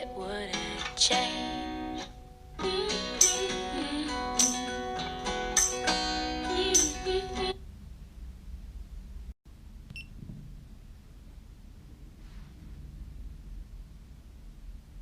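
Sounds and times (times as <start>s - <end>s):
strummed acoustic guitar song: 0.0s - 7.5s.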